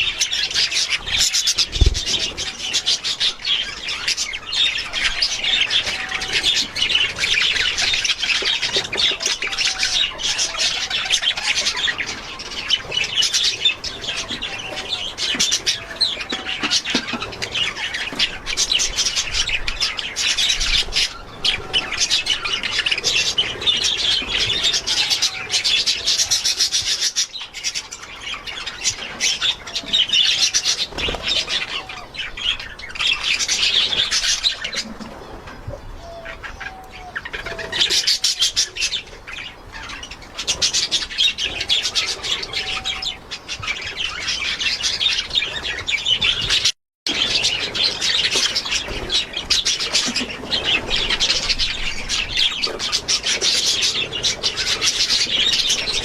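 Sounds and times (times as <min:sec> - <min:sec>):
budgerigars chattering: 0:00.0 - 0:56.0.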